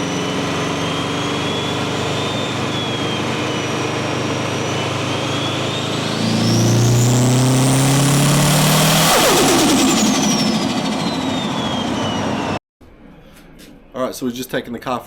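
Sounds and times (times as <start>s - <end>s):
car engine accelerating: 0.0s - 12.6s
compressor surge flutter: 0.0s - 12.6s
turbo whistle: 0.0s - 12.6s.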